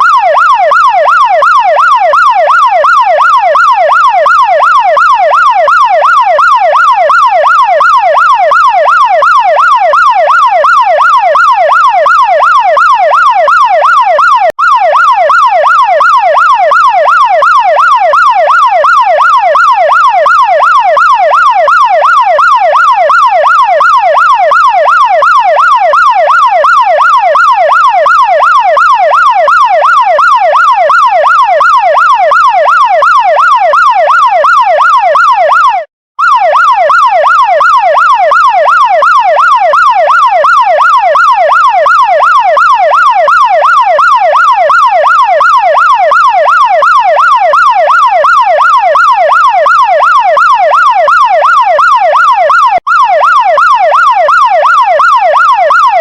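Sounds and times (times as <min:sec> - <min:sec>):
fire truck siren yelping: 0:00.0 - 0:56.0.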